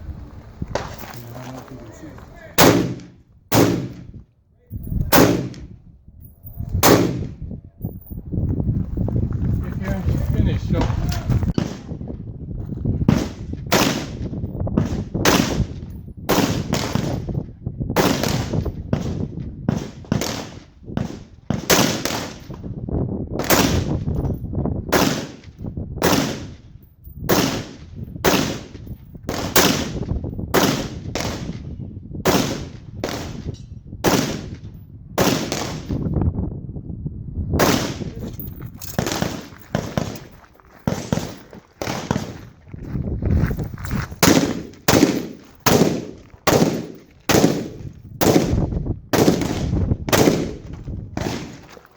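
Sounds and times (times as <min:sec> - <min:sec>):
rifle shots: 0:02.6 - 0:04.2, 0:05.1 - 0:05.7, 0:06.8 - 0:07.4, 0:13.1 - 0:17.3, 0:18.0 - 0:22.6, 0:23.4 - 0:24.0, 0:24.9 - 0:26.6, 0:27.3 - 0:36.0, 0:37.6 - 0:42.4, 0:44.2 - 0:51.7.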